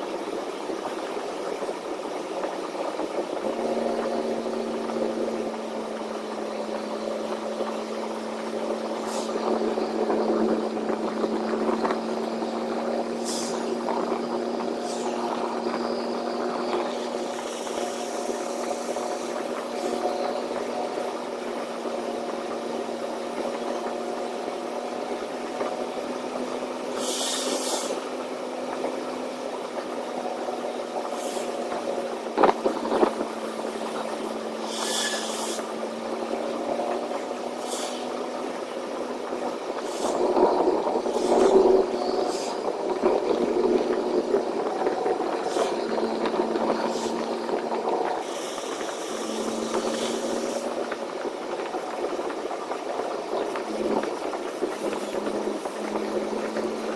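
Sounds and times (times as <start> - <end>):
truck engine running: 0.0 - 56.9
short hissing bursts: 34.7 - 35.7, 37.6 - 38.1.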